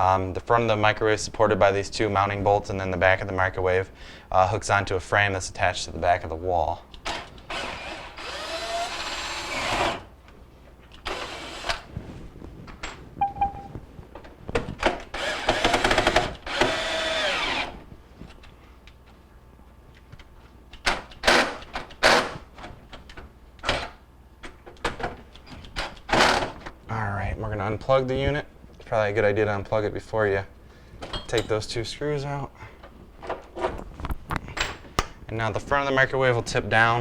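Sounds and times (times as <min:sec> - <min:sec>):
power drill driving screws: 0:07.1 - 0:10.1, 0:11.0 - 0:11.9, 0:15.1 - 0:17.8.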